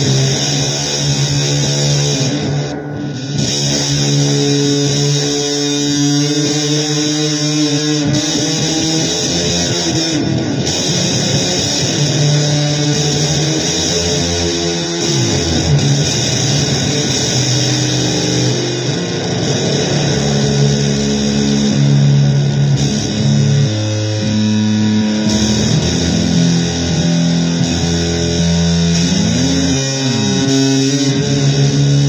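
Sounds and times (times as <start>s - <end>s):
noisy blues guitar music: 0.0s - 32.0s.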